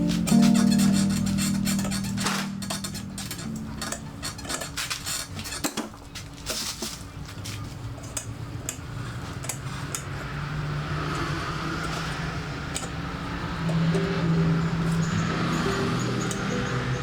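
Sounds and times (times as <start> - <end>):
metal tools clinking: 0.0 - 6.8.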